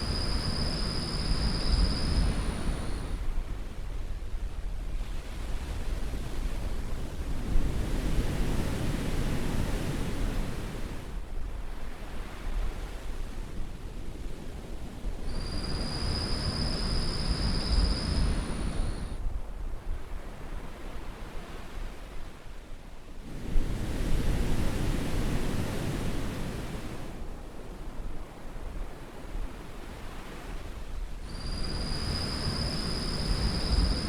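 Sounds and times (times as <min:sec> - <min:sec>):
high steady whistling tone: 0:00.0 - 0:03.3, 0:15.3 - 0:19.2, 0:31.3 - 0:34.0
surf washing on beach: 0:23.2 - 0:34.0.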